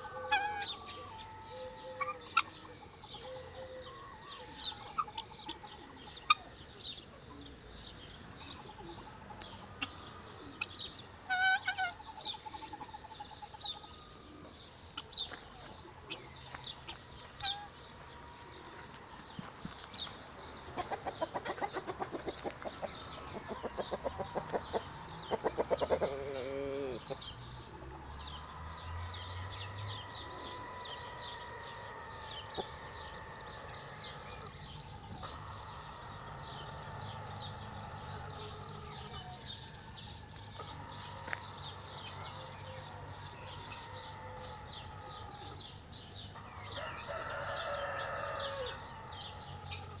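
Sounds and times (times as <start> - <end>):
chickens clucking: 0.0 - 7.6, 8.2 - 50.0.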